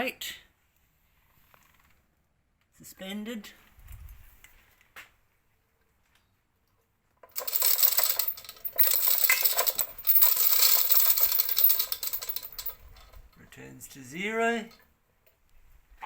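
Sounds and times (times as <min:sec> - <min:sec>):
chain rattling through chain block: 0:07.3 - 0:13.3.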